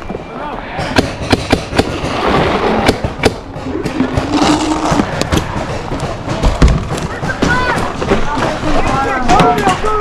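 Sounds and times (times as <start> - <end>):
paintball marker shots: 0.9 - 2.1
heavy low thump: 1.0 - 8.6.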